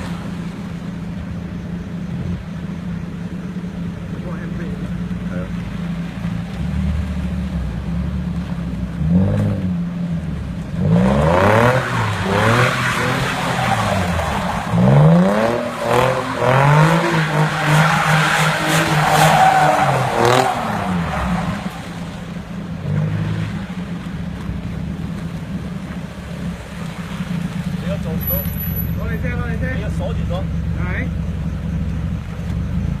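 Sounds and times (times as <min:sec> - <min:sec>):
car engine revving: 0:00.0 - 0:33.0
tyres squealing: 0:11.6 - 0:22.4, 0:27.6 - 0:30.0.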